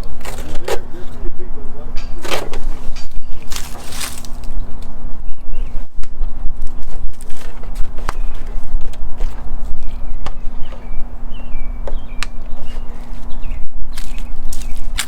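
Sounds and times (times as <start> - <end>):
low rumble and hum: 0.0 - 15.0
bird chirps: 4.6 - 6.5, 9.7 - 15.0.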